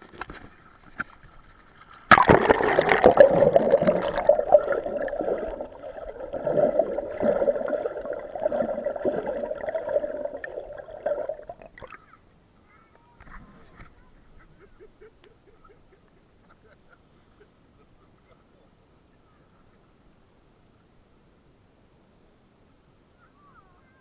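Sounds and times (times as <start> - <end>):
muffled underwater sloshing: 0.3 - 12.0
water splashing and gurgling: 2.1 - 12.0.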